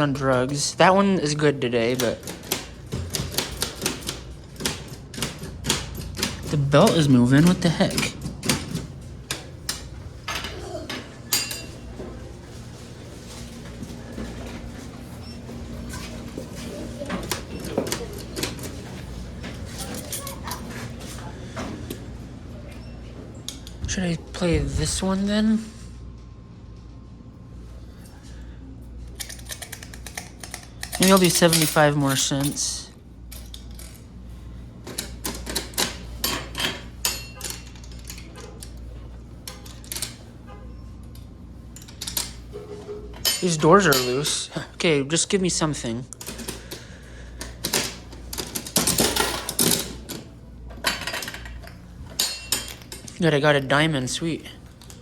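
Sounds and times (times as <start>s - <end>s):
vending machine clicks and clatter: 0.0s - 22.8s, 29.0s - 55.0s
steady low hum: 0.0s - 55.0s
coins clinking through coin mechanism: 11.2s - 12.0s, 16.8s - 20.6s, 29.2s - 34.1s, 35.0s - 40.2s, 41.1s - 44.7s, 47.4s - 55.0s.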